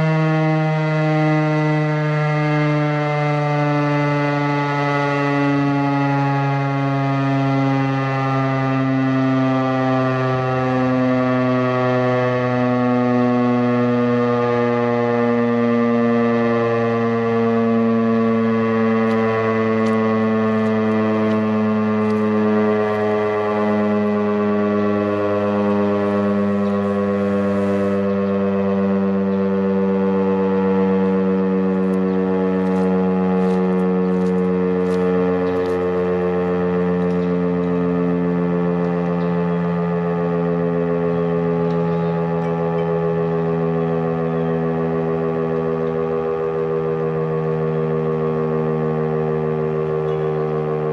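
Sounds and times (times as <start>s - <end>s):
dual-tone fire siren: 0.0s - 50.9s.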